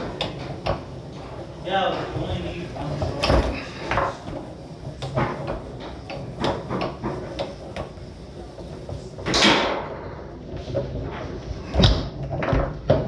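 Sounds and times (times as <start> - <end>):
foosball ball clacking: 2.8 - 13.0.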